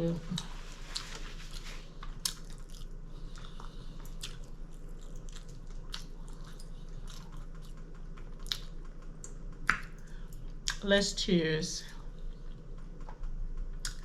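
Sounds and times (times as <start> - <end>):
faint low hum: 0.0 - 14.0
crunchy chewing: 0.3 - 10.8.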